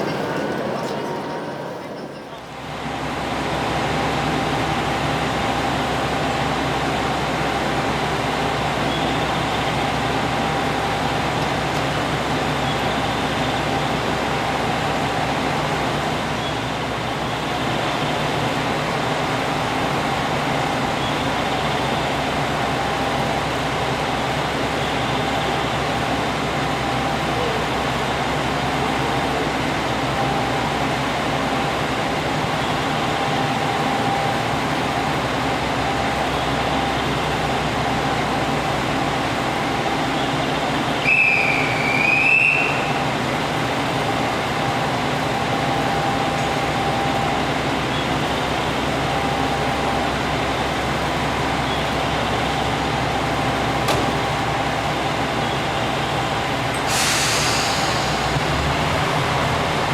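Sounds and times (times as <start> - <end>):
high wavering squeal: 0.0 - 2.7
diesel engine drone: 18.8 - 59.9
short hiss: 56.8 - 58.5.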